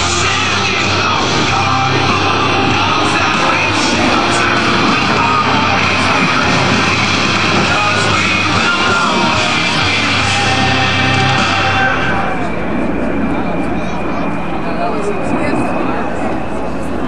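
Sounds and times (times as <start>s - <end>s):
rock music over loudspeakers: 0.0s - 13.4s
jet engines: 0.0s - 17.0s.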